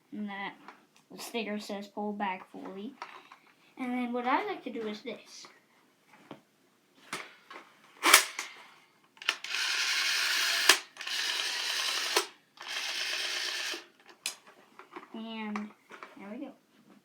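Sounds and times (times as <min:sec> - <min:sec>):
toy gun hissing bursts: 0:08.0 - 0:08.6, 0:09.2 - 0:13.9
toy gun mechanism clicking: 0:08.0 - 0:08.6, 0:09.2 - 0:14.4.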